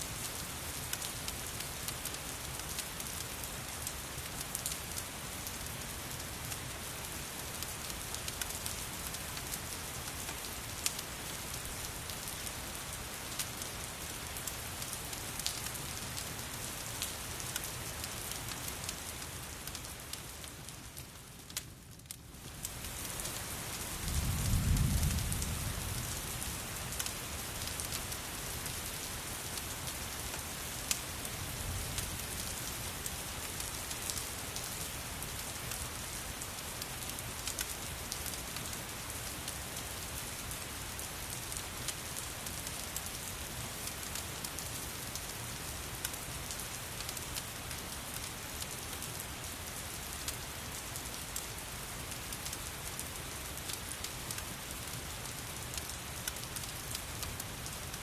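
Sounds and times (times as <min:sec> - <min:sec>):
rain falling: 0:00.0 - 0:58.0
thunder rumble: 0:24.0 - 0:25.9.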